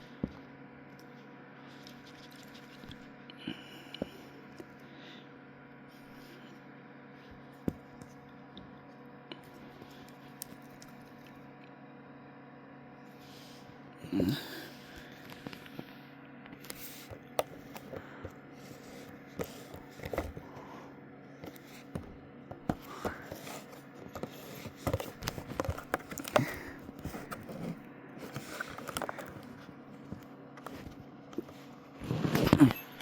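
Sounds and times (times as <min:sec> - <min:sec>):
steady low hum: 0:00.0 - 0:33.0
toys and packaging handled: 0:16.6 - 0:20.6, 0:21.4 - 0:32.7.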